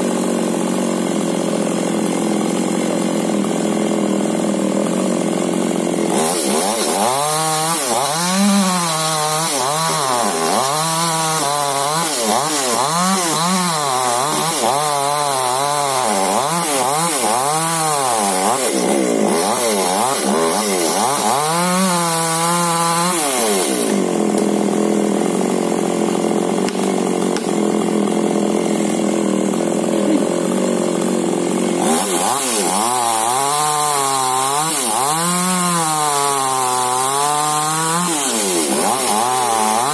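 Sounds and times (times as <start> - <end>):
chainsaw cutting tree: 0.0 - 39.9.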